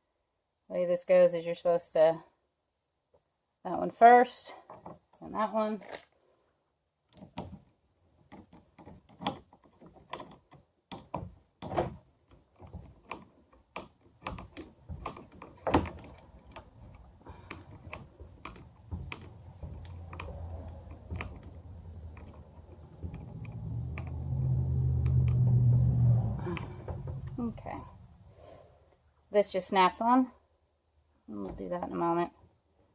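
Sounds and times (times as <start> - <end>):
small parts clicking and knocking: 4.7 - 6.2, 7.0 - 28.0.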